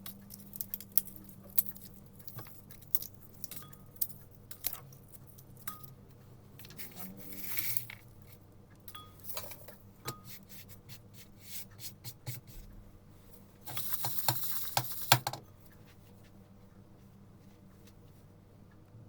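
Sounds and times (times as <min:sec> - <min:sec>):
garlic skins crackling: 0:00.0 - 0:05.8.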